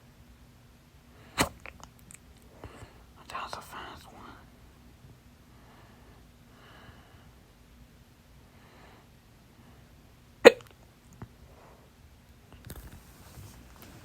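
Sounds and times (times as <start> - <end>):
woman hiccuping: 10.4 - 10.8.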